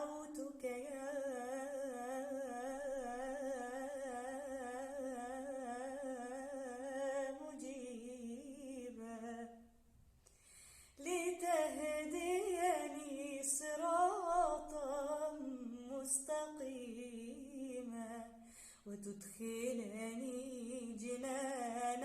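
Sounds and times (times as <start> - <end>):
girl singing unaccompanied: 0.0 - 9.6, 11.0 - 18.3.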